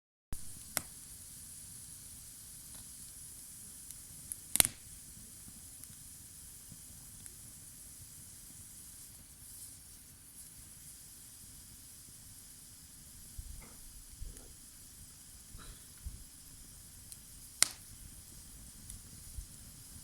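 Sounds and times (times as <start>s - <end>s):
sharp pop of fire: 0.4s - 1.0s, 3.9s - 5.0s, 13.5s - 14.6s, 17.1s - 20.0s
campfire hissing and crackling: 0.4s - 20.0s.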